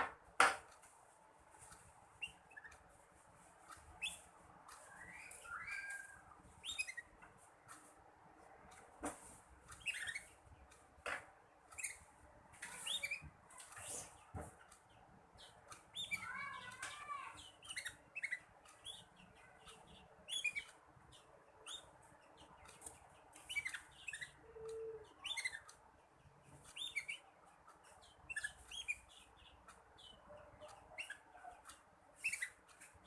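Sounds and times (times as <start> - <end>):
canary twittering: 2.2 - 2.8, 3.8 - 7.2, 9.7 - 10.4, 11.7 - 25.8, 26.4 - 33.0.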